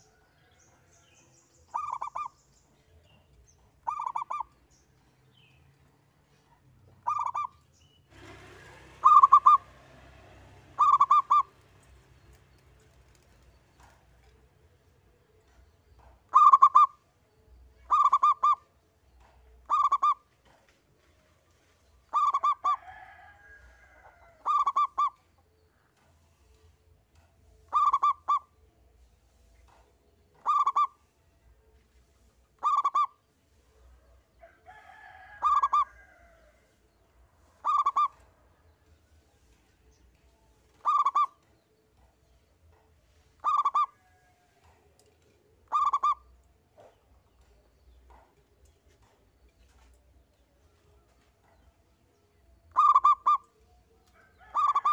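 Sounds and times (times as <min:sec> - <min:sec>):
faint warbling bird chatter: 0:00.0 - 0:05.5, 0:15.5 - 0:17.1, 0:17.7 - 0:20.4, 0:29.3 - 0:31.3, 0:32.1 - 0:33.6, 0:39.9 - 0:42.4, 0:43.1 - 0:44.0, 0:45.1 - 0:49.9, 0:52.6 - 0:53.7
dove cooing: 0:01.7 - 0:02.4, 0:03.8 - 0:04.6, 0:07.0 - 0:07.6, 0:08.2 - 0:09.8, 0:10.7 - 0:11.6, 0:16.3 - 0:17.0, 0:17.8 - 0:18.7, 0:19.6 - 0:20.6, 0:22.1 - 0:23.1, 0:24.2 - 0:25.2, 0:27.7 - 0:28.6, 0:30.4 - 0:31.0, 0:32.6 - 0:33.2, 0:35.4 - 0:36.0, 0:37.5 - 0:38.2, 0:40.7 - 0:41.4, 0:43.4 - 0:44.2, 0:45.6 - 0:47.0, 0:52.7 - 0:53.5, 0:54.4 - 0:54.9.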